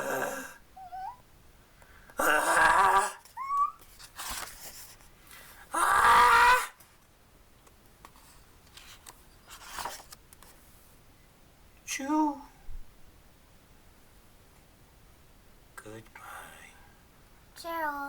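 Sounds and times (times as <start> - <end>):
person wailing cries: 2.2 - 3.8, 5.7 - 6.8.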